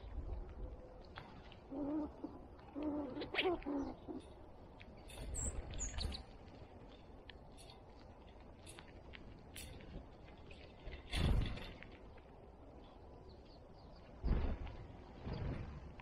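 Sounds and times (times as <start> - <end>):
small birds chirping: 0.0 - 7.5, 12.4 - 15.9
bird cooing: 1.6 - 4.4.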